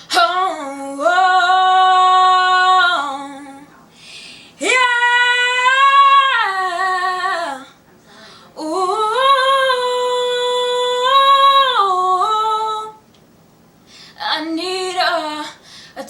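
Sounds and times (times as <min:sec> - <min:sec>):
woman singing a cappella: 0:00.0 - 0:03.9, 0:04.5 - 0:13.1, 0:14.1 - 0:16.0
breath: 0:03.9 - 0:04.6, 0:08.0 - 0:08.6, 0:13.8 - 0:14.2, 0:15.6 - 0:16.0.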